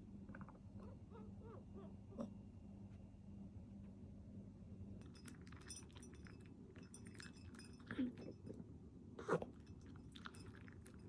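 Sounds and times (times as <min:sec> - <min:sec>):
bowl clinks: 0:05.0 - 0:08.5.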